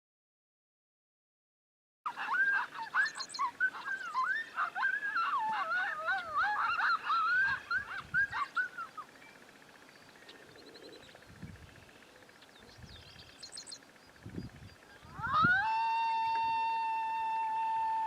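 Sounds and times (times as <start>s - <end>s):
faint bird chirps: 2.1s - 15.6s
coyotes yipping and howling: 2.1s - 18.0s.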